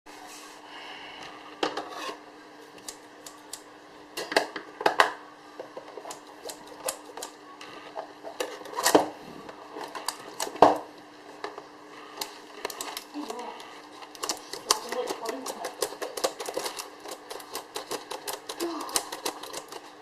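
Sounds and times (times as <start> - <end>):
faint steady hum: 0.1 - 20.0
packaging crinkling and clicking: 12.2 - 20.0.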